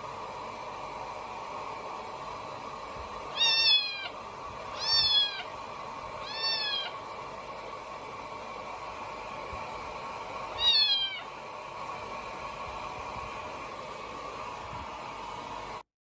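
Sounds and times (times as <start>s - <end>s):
steady background hum: 0.0s - 15.8s
kitten meowing: 3.3s - 5.5s, 6.2s - 7.0s, 10.6s - 11.3s.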